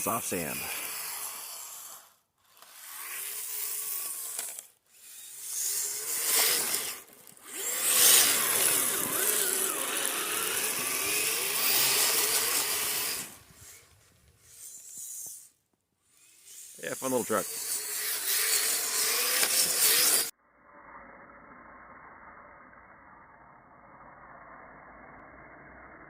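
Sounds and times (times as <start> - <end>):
electric motor whining: 0.0 - 20.3.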